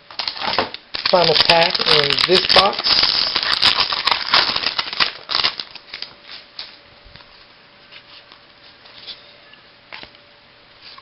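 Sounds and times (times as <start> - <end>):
wrapper rustling: 0.0 - 6.8.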